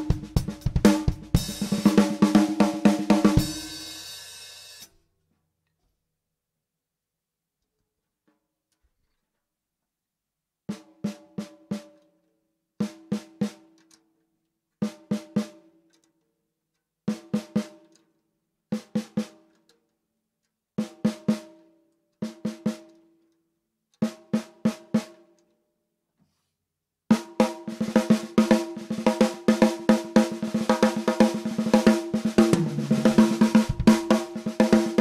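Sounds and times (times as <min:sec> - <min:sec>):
snare drum hits and roll: 0:00.0 - 0:03.8, 0:27.1 - 0:35.0.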